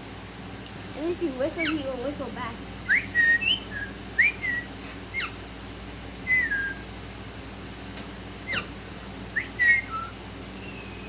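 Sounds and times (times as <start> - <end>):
parrot whistling: 1.6 - 1.8, 2.8 - 5.4, 6.2 - 6.8, 9.3 - 11.0.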